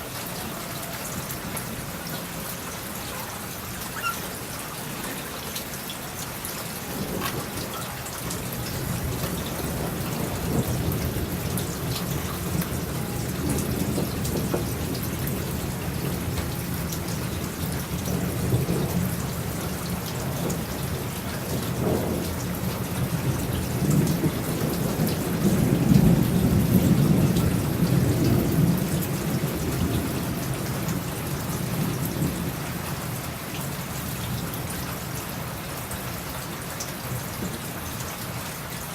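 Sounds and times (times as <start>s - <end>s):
steady rain falling: 0.0s - 38.9s
thunder rumbling: 6.8s - 32.6s.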